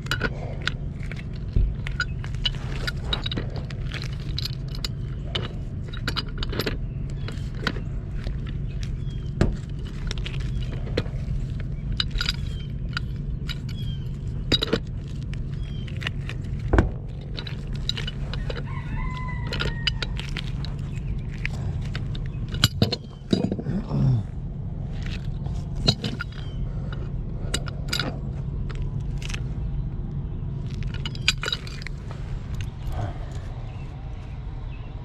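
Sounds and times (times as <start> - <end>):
metal tools clicking and knocking: 0.0 - 24.2, 24.9 - 29.5, 30.6 - 33.4
steady low hum: 0.0 - 35.0
rooster crowing: 18.4 - 20.3.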